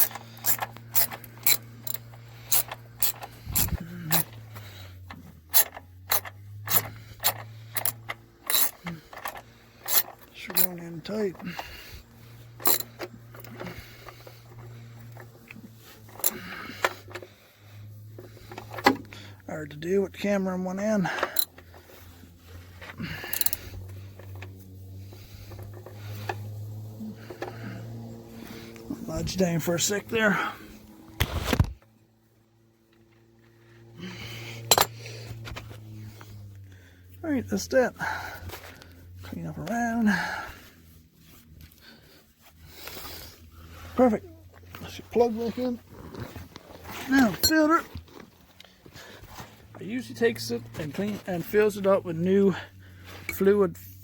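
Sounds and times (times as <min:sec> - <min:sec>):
socket ratchet clicking: 0:00.0 - 0:04.4, 0:05.1 - 0:10.7, 0:12.6 - 0:13.6, 0:23.3 - 0:23.6
low steady hum: 0:00.0 - 0:54.0.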